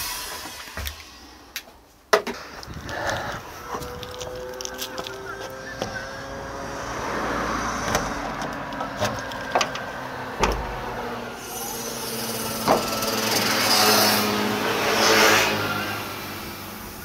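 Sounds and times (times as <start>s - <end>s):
sharp knocks and clunks: 7.8s - 11.2s
hissing rush: 9.2s - 17.0s.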